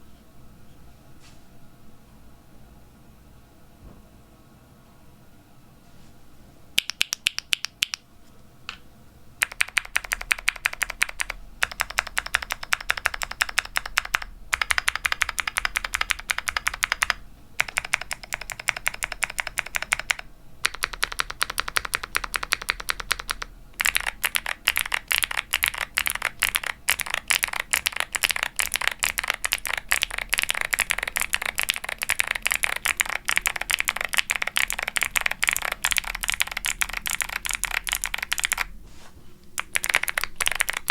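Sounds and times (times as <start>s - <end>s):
typing on mechanical keyboard: 6.8s - 8.0s, 9.4s - 38.7s, 39.6s - 40.9s.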